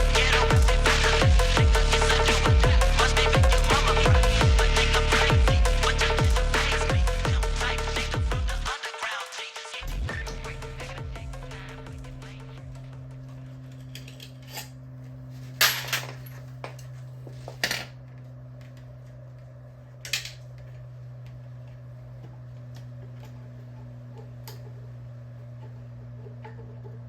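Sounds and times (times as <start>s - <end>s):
steady low hum: 0.0s - 8.7s, 9.8s - 27.0s
metal tools clinking: 13.6s - 17.9s.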